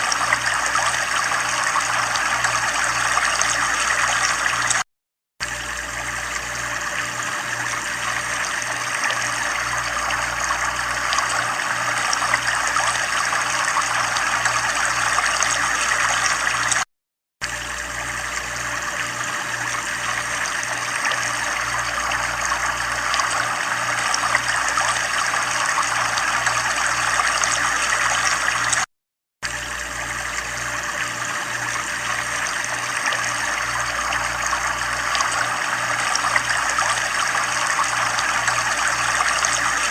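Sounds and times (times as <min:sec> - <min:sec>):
trickling water: 0:00.0 - 0:04.8, 0:05.4 - 0:39.9
low pulsing hum: 0:05.4 - 0:16.8, 0:17.4 - 0:28.8, 0:29.5 - 0:39.9.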